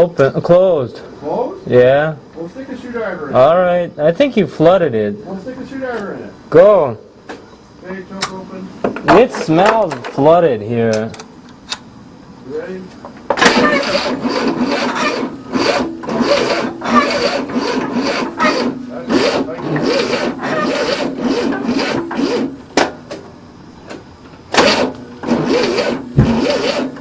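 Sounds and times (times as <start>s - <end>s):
car engine cranking: 13.4s - 22.8s, 24.5s - 27.0s.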